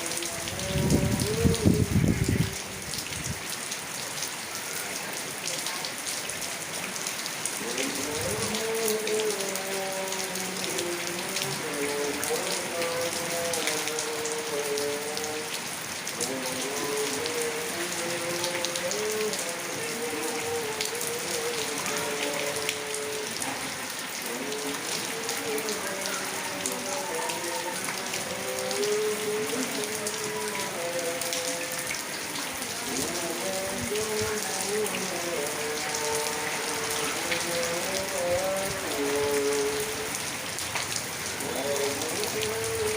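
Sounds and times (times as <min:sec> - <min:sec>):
heavy rain falling: 0:00.0 - 0:42.9.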